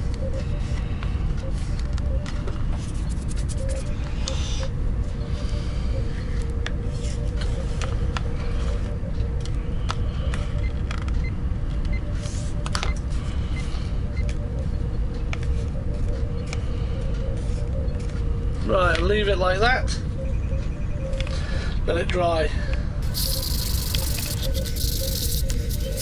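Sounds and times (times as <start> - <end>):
faint steady hum: 23.0 - 26.0.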